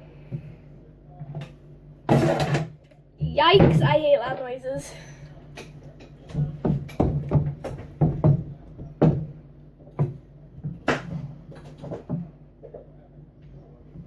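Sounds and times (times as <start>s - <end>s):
steady low hum: 0.0s - 14.0s
sharp knocks and clatters: 5.6s - 12.9s.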